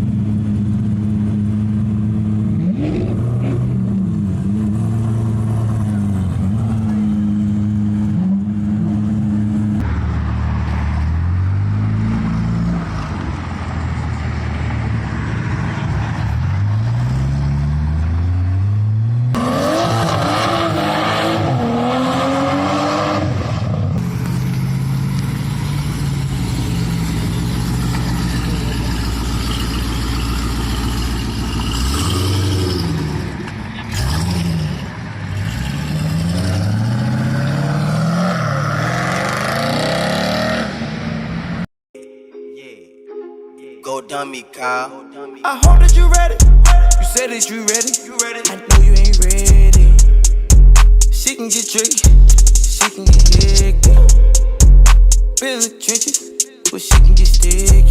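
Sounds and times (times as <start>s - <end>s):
car engines revving: 0.0s - 41.7s.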